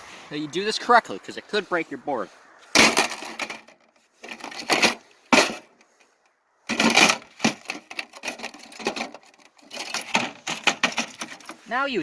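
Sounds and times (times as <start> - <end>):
hard parts knocking and clattering: 2.7 - 5.9, 6.7 - 11.6.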